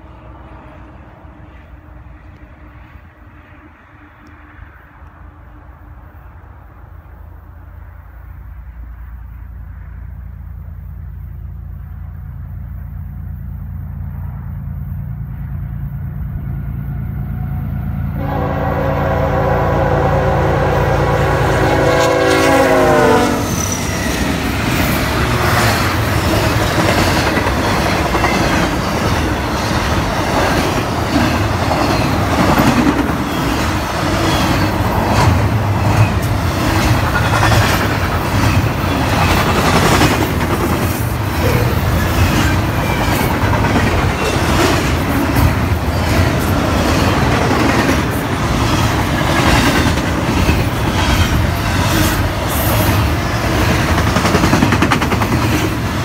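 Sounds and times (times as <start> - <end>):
train rumble: 0.0 - 56.0
train horn: 17.3 - 23.8
wheels clattering on rails: 23.5 - 56.0.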